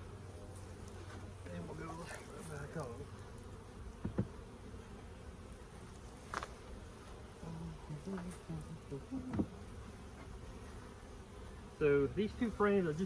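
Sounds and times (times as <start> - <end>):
bees flying close past: 0.0 - 13.0
honeybees buzzing: 0.0 - 13.0
light knocks: 4.0 - 4.4.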